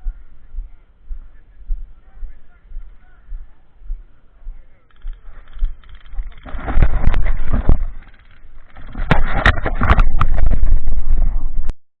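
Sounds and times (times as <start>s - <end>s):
camera handling noise: 4.9s - 10.8s.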